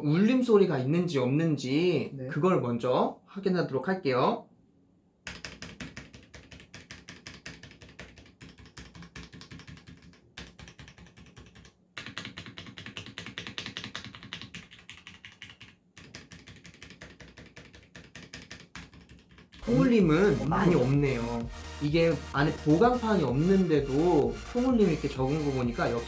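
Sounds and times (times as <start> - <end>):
mechanical keyboard typing: 5.3 - 21.4.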